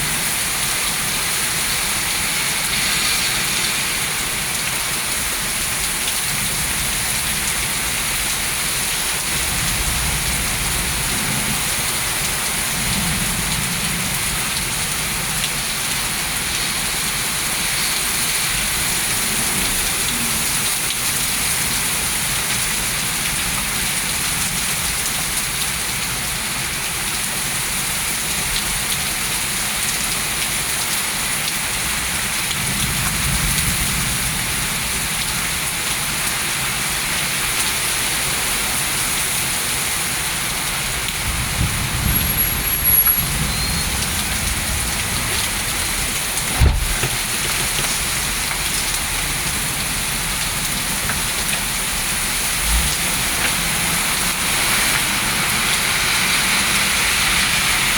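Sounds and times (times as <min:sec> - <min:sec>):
heavy rain pouring: 0:00.0 - 0:57.9
low thunder rumble: 0:41.2 - 0:47.4.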